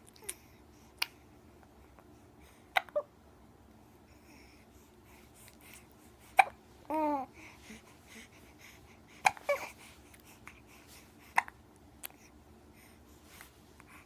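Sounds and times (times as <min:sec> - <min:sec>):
baby cooing: 0:06.4 - 0:07.4.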